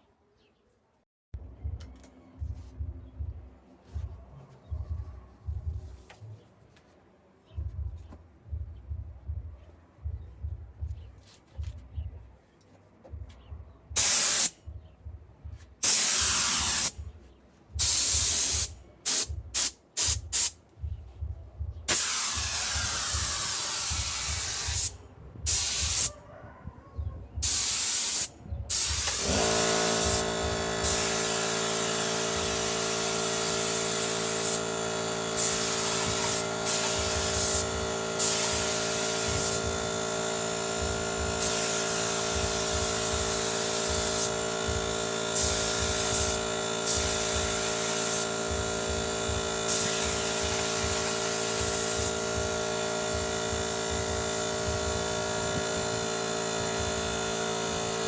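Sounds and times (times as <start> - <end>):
compressed air blasts hissing: 14.0 - 14.6, 15.8 - 17.0, 17.8 - 20.6, 21.9 - 26.2, 27.4 - 58.0
air compressor motor running: 14.0 - 14.9, 15.8 - 17.2, 17.8 - 26.2, 27.0 - 58.0.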